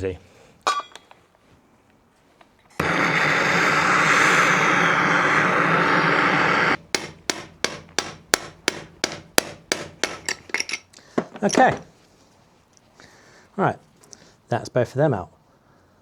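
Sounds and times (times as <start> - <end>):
loud rushing noise: 2.8 - 6.8
hammer blows on metal: 2.8 - 10.4.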